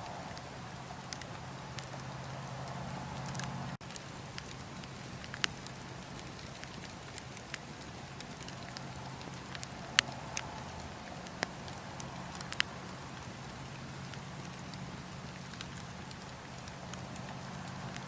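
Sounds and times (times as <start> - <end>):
bonfire crackling: 0.0 - 18.0.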